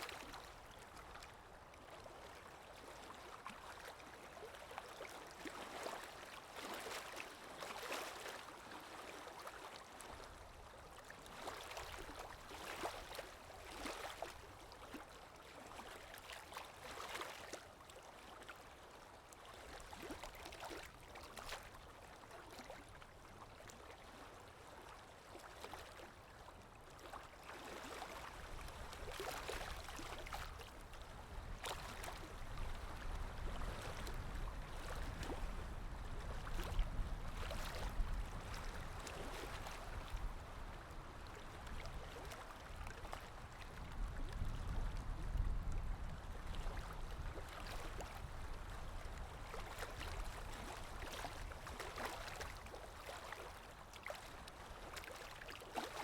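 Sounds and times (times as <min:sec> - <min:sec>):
lake waves splashing on shore: 0:27.2 - 0:45.2, 0:46.2 - 0:56.0.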